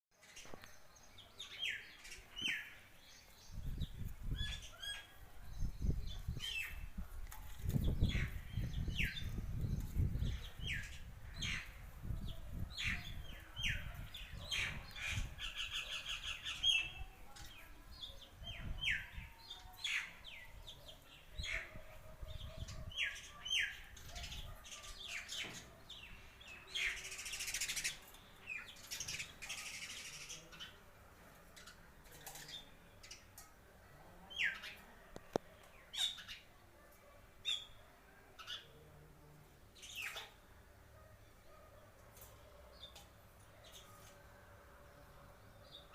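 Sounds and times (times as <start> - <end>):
sparrows chirping: 0.2 - 38.9, 39.6 - 45.9.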